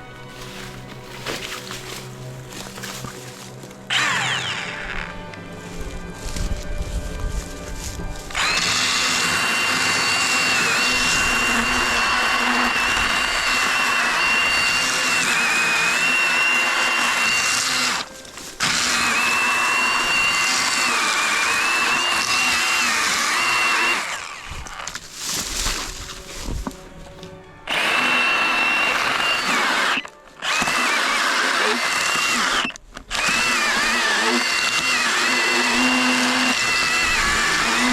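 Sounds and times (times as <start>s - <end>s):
mini chainsaw whining: 3.9s - 5.4s, 7.8s - 25.1s, 27.7s - 37.9s.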